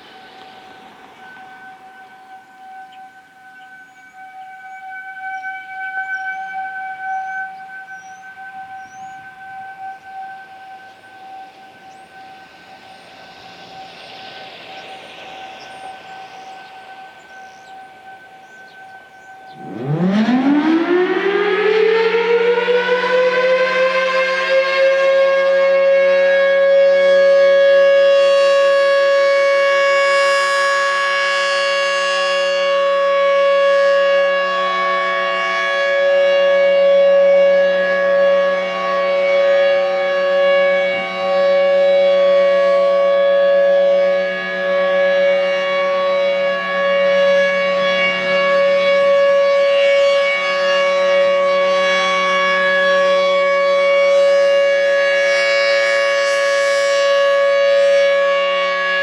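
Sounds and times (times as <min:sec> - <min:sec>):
low hum: 0:00.0 - 0:25.4
warning siren steady tone: 0:00.0 - 0:59.0.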